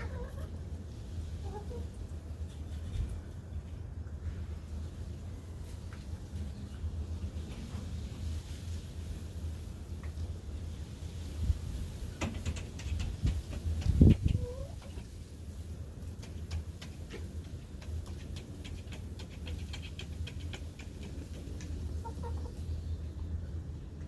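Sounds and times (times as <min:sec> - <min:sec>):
chickens clucking softly: 0:00.0 - 0:00.7, 0:01.3 - 0:03.2, 0:12.3 - 0:15.3, 0:16.1 - 0:23.3
small sharp ticks and taps: 0:16.1 - 0:21.8.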